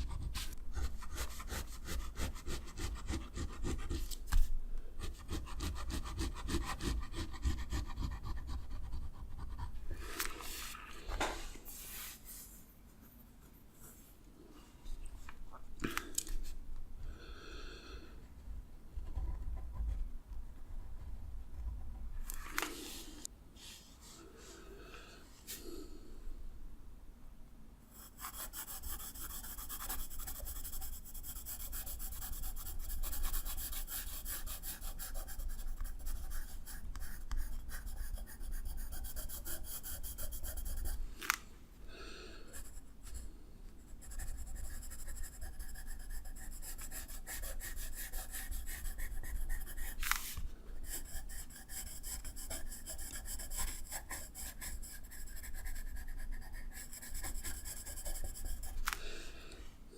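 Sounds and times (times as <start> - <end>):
drawing tool scratching on paper: 0.0 - 4.2, 5.0 - 9.8, 27.9 - 41.0, 44.0 - 58.9.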